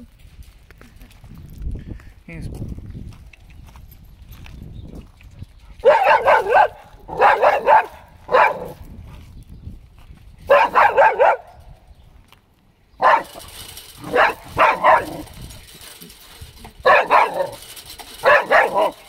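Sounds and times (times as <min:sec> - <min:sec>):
dog barking: 0:05.8 - 0:08.8, 0:10.5 - 0:11.5, 0:13.0 - 0:13.4, 0:14.1 - 0:15.2, 0:16.8 - 0:17.6, 0:18.2 - 0:19.0.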